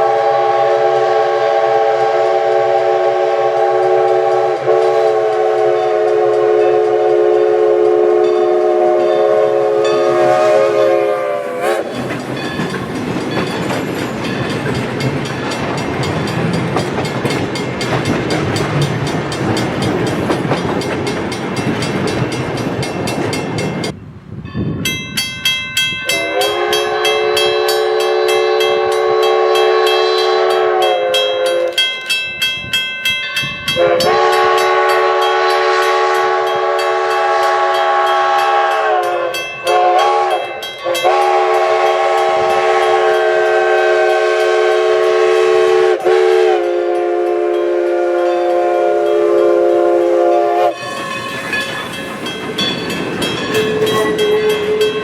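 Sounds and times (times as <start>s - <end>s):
steam locomotive whistle blast: 0.0s - 12.2s, 26.0s - 31.8s, 33.7s - 55.0s
train rumbling past: 0.0s - 55.0s
fast even ringing bell: 11.9s - 35.6s, 50.7s - 55.0s.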